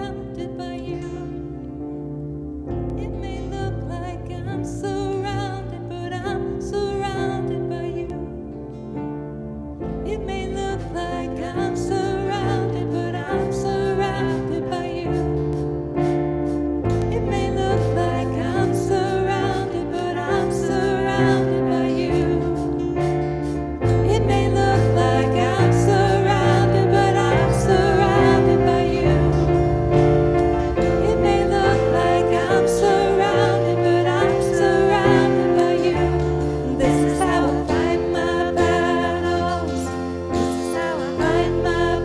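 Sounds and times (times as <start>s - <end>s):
bass: 0.0s - 42.0s
keyboard: 0.0s - 42.0s
person singing: 16.9s - 23.2s, 23.8s - 42.0s
steady beat: 23.0s - 42.0s.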